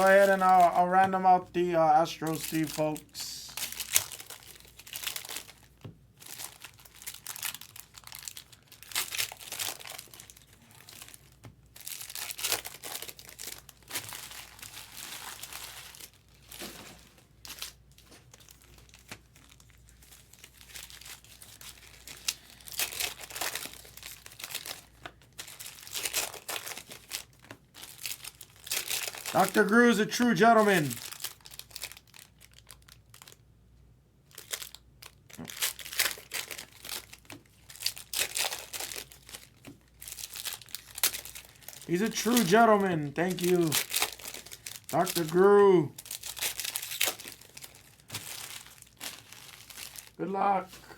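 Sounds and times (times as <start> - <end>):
foil wrappers crinkling and tearing: 0.0 - 33.5, 34.2 - 50.9.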